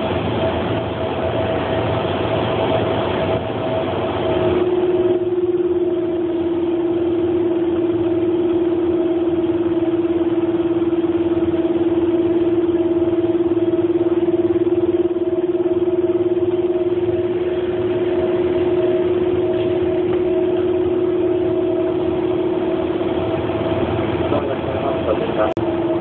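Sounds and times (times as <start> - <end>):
steady mid-pitched hum: 0.0 - 26.0
train running noise: 0.0 - 26.0.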